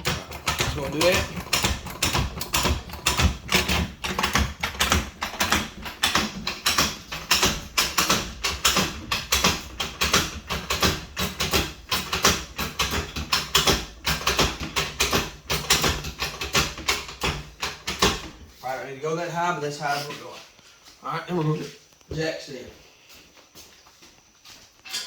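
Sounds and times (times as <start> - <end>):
car jack clicking: 0.0 - 18.4.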